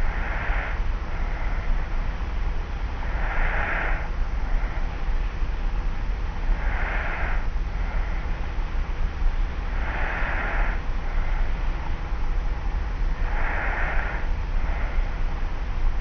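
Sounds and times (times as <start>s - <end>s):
person snoring softly: 0.0s - 1.7s, 3.0s - 4.9s, 6.4s - 8.4s, 9.6s - 11.7s, 13.0s - 15.4s
cassette recorder hum and hiss: 0.0s - 16.0s.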